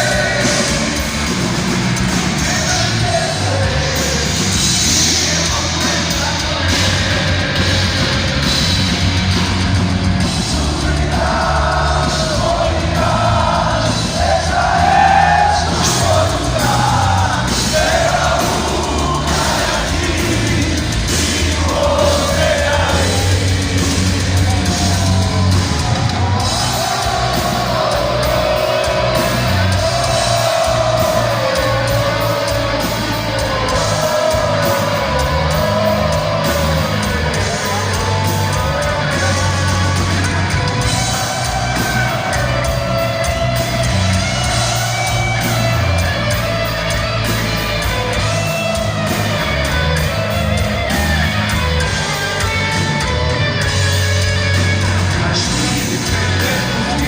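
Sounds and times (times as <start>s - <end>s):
bass: 0.0s - 57.0s
distorted electric guitars: 0.0s - 57.0s
drums: 0.0s - 57.0s.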